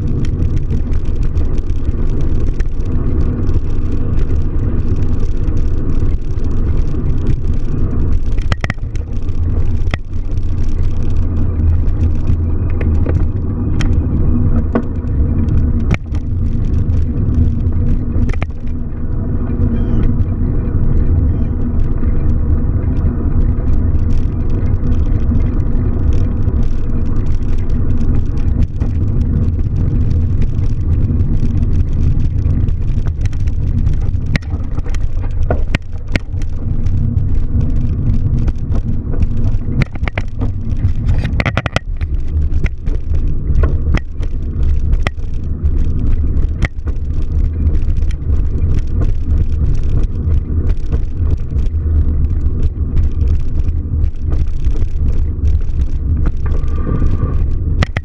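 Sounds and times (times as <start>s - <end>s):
car rumble: 0.0s - 58.0s
clicks and knocks: 8.3s - 10.4s, 17.6s - 18.8s, 32.6s - 45.4s, 57.8s - 58.0s.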